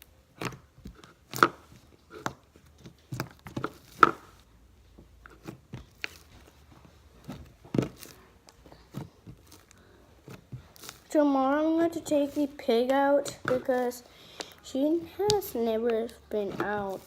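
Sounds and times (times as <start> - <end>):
slime squishing with sticky pops: 5.3 - 11.4, 12.0 - 17.0.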